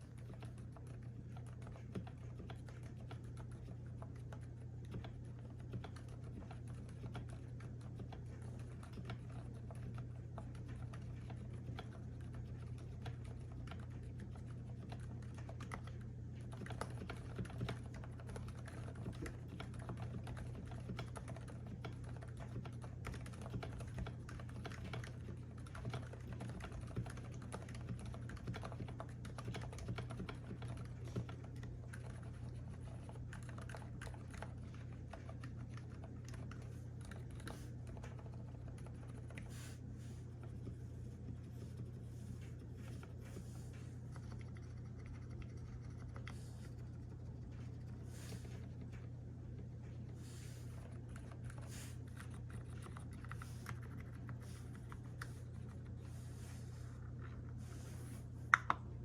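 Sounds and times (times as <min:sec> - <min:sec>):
mechanical keyboard typing: 0:00.0 - 0:39.5.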